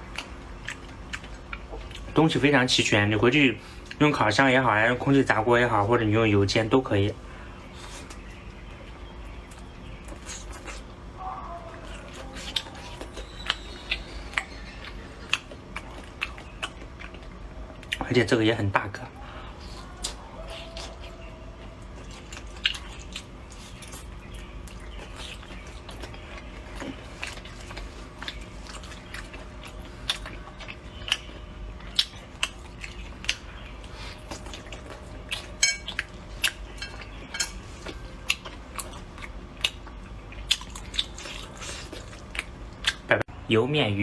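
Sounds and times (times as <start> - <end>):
person chewing and biting food: 0.0 - 2.2, 9.4 - 11.1, 11.7 - 18.0, 19.5 - 43.1
utensils clicking against dishes: 35.6 - 36.0, 36.7 - 37.6.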